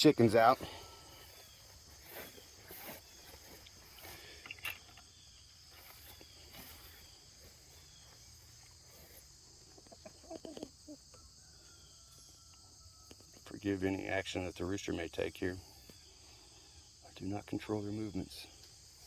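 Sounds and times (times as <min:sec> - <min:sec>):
insects chorus: 0:00.0 - 0:19.0.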